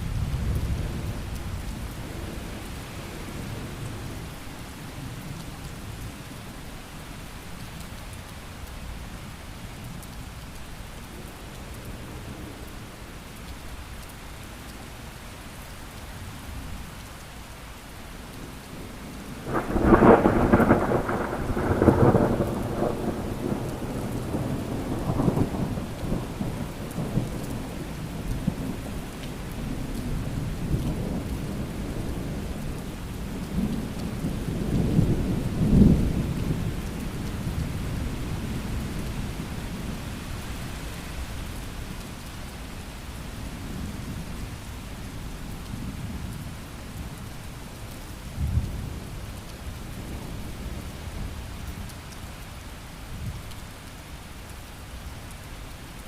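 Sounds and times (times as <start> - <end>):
steady rain: 0.0 - 56.0
thunder rumbling: 19.3 - 28.9.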